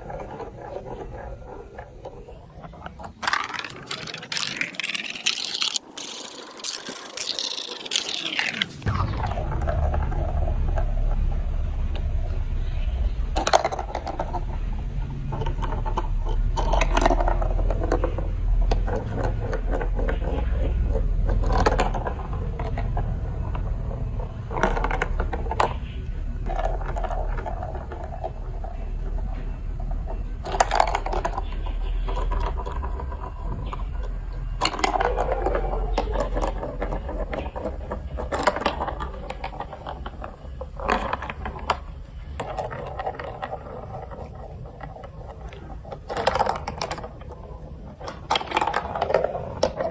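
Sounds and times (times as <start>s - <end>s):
plastic blocks clicking and clattering: 0.0s - 11.1s, 13.3s - 49.9s
steady low rumble: 8.7s - 30.9s.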